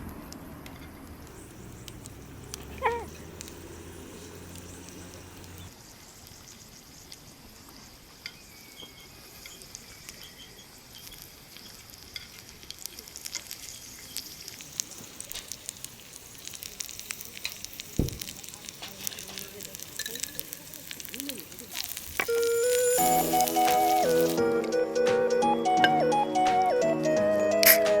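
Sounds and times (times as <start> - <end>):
fire crackling and popping: 1.1 - 5.7, 9.2 - 25.4
food sizzling in a pan: 1.3 - 5.8, 7.8 - 24.6
dull thump: 18.0 - 18.3.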